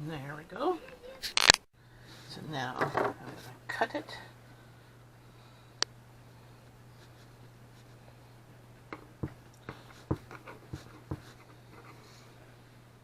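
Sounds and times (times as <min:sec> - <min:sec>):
knife knocking on cutting board: 0:10.1 - 0:11.3.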